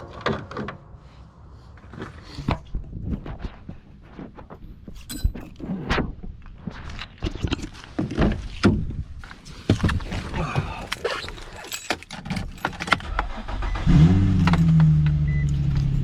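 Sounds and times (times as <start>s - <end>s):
car engine cranking and idling: 9.2s - 16.0s.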